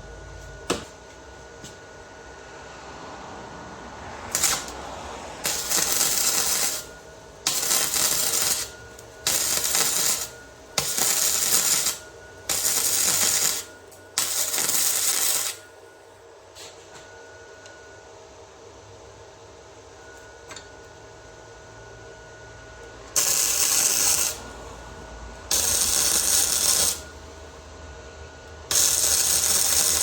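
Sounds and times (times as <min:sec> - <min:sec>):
arc welding: 0:04.3 - 0:15.8, 0:23.1 - 0:24.8, 0:25.5 - 0:27.4, 0:28.6 - 0:30.0.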